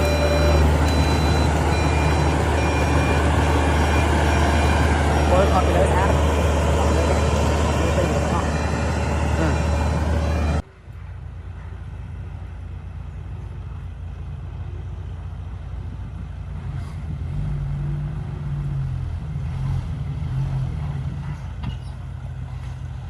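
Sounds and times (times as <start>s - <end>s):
diesel engine rumbling: 0.0s - 23.0s.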